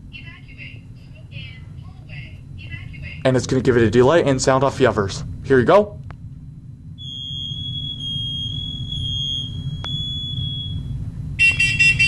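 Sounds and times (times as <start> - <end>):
low steady hum: 0.0 - 12.0
high-pitched smoke alarm tone: 7.0 - 12.0.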